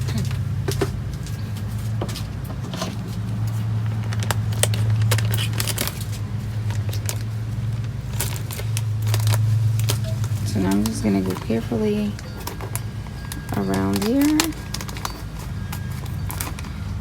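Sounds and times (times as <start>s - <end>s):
scissors snipping plastic: 4.0s - 16.9s.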